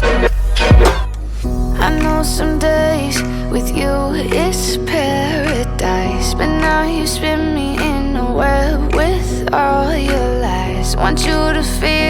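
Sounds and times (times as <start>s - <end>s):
deep drum hit: 0.0s - 2.1s.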